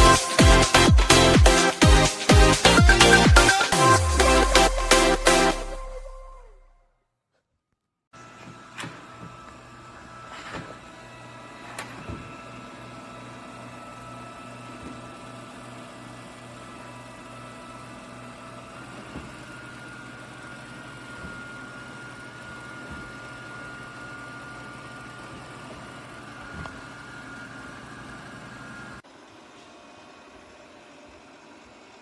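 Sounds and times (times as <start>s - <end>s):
robot vacuum motor hum: 8.2s - 32.0s.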